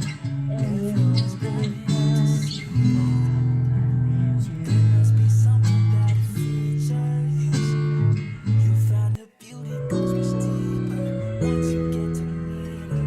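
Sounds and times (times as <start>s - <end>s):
strummed acoustic guitar: 0.0s - 13.0s
long held bass notes: 9.7s - 13.0s.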